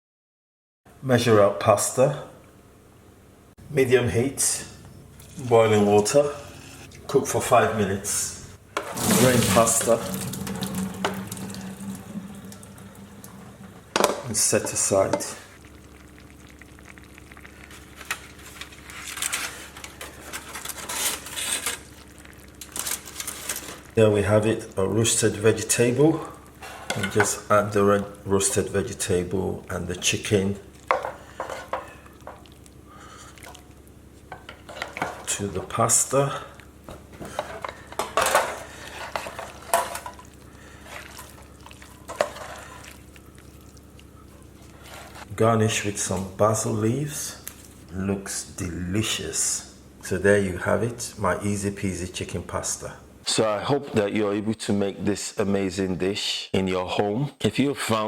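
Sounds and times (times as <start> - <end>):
soft rustling and scraping: 37.1 - 45.3.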